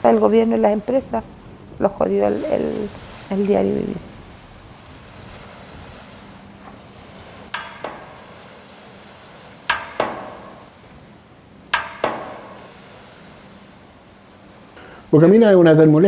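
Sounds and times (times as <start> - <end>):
metal struck ringing: 7.6 - 8.6, 9.7 - 10.8, 11.8 - 12.8.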